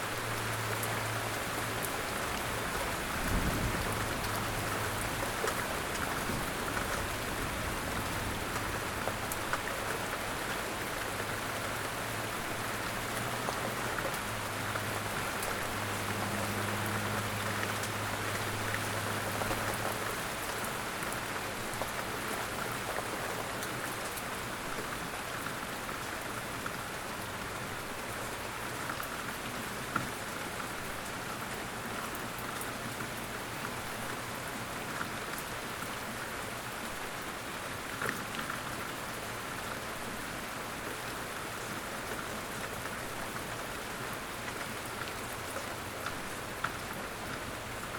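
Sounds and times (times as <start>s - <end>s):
rain drops ticking: 0.0s - 47.9s
steady rain hiss: 0.0s - 47.9s.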